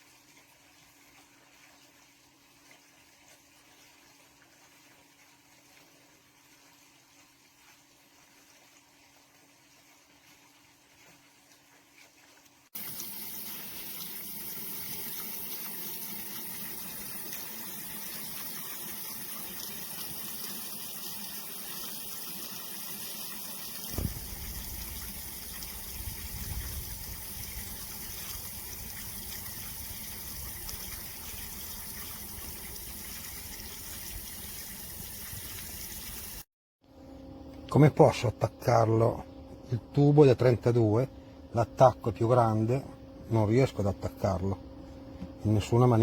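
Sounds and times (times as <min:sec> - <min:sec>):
fountain water splashing into pool: 0:12.8 - 0:36.4.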